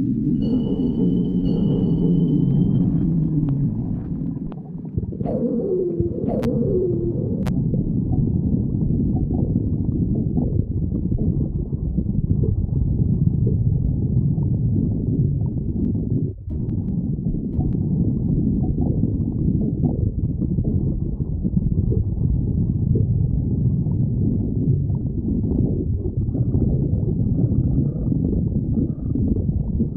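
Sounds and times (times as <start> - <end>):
stomach growling: 0.0 - 29.9.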